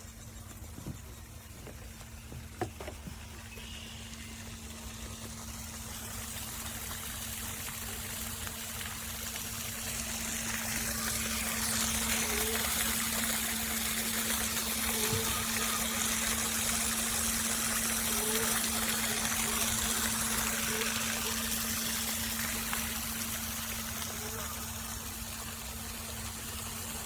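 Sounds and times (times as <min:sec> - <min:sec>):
pump humming: 0:00.0 - 0:27.0
water gushing: 0:00.0 - 0:27.0.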